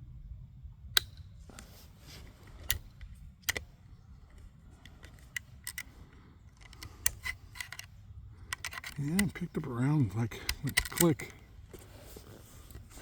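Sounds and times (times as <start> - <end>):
rifle bolt clicks: 1.0 - 1.7, 2.6 - 11.5.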